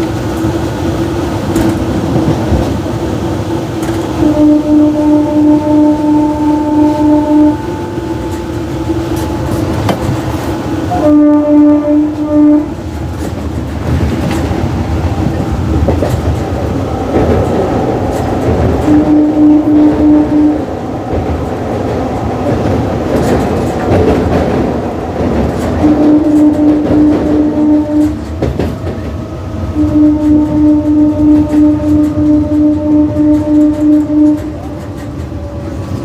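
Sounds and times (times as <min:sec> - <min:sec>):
train rumble and clickety-clack: 0:00.0 - 0:36.0
train horn short low toots: 0:04.2 - 0:08.6, 0:10.9 - 0:12.8, 0:18.8 - 0:20.7, 0:25.8 - 0:28.3, 0:29.7 - 0:35.8.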